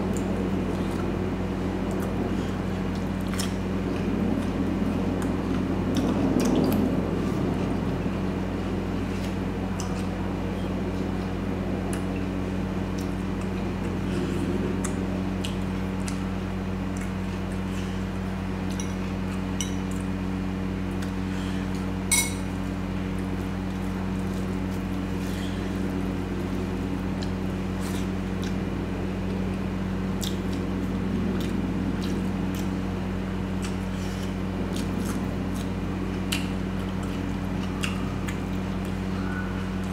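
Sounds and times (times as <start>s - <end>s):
low electrical hum: 0.0s - 39.9s
wet squishes of eating: 0.0s - 39.9s
sharp clink: 22.1s - 22.5s.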